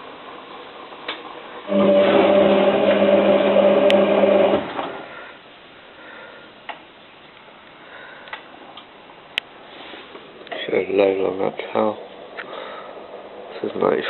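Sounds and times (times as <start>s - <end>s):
washing machine motor humming: 0.0s - 5.3s.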